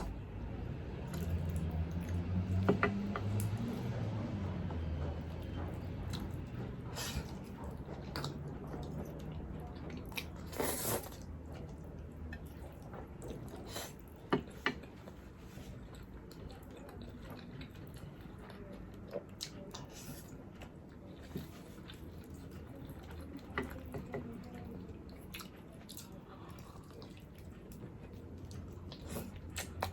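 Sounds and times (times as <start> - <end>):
person chewing: 6.0 - 18.4, 25.1 - 29.9.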